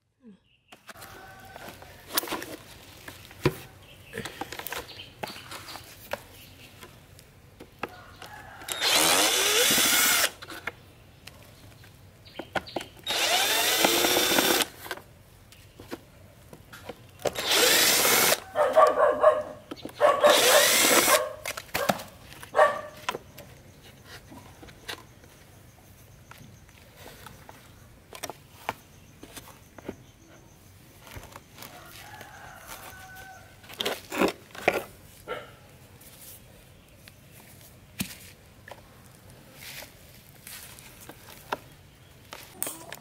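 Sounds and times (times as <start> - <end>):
electric drill motor bursts: 8.7 - 10.4, 13.0 - 14.8, 17.3 - 18.4, 20.3 - 21.2.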